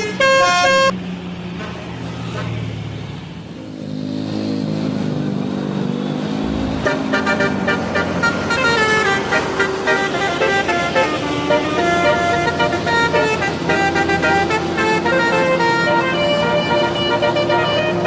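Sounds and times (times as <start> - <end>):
bus horn playing tune: 0.0 - 1.0, 6.8 - 18.0
bus engine running: 0.0 - 18.0.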